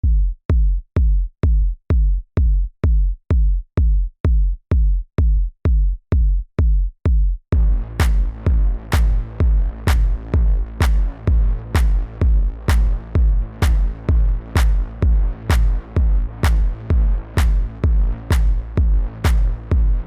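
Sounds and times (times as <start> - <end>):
kick drum thumping: 0.0 - 20.0
electronic dance music: 7.6 - 20.0.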